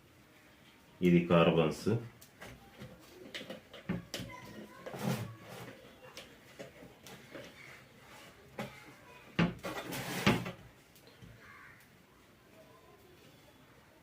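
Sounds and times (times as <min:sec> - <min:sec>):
small clicks and knocks: 0:02.2 - 0:05.0
scrape: 0:04.9 - 0:05.7, 0:09.6 - 0:10.6.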